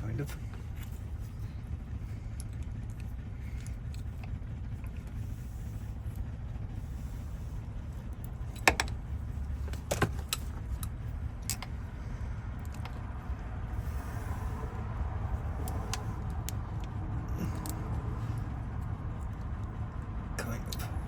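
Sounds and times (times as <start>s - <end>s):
steady low hum: 0.0s - 21.0s
small tools clicking on metal: 15.6s - 17.9s.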